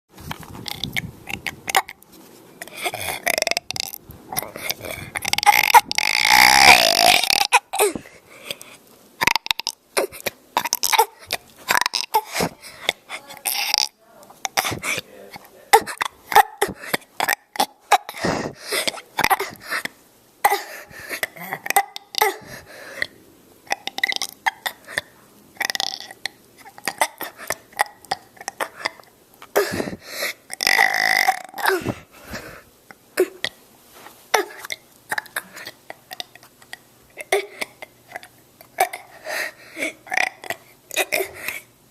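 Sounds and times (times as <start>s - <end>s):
child burping: 0.6s - 2.0s, 2.6s - 8.1s, 9.2s - 32.5s, 34.3s - 36.4s, 37.2s - 39.1s, 39.8s - 41.5s.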